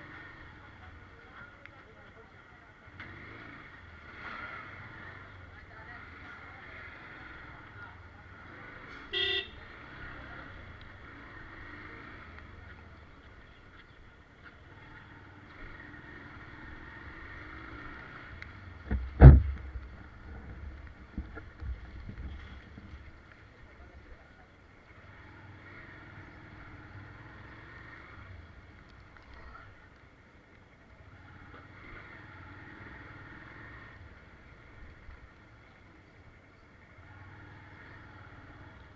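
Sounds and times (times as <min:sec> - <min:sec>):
street traffic passing: 0:00.0 - 0:38.9
vehicle horn toot: 0:09.1 - 0:09.6
loud thump: 0:18.9 - 0:19.7.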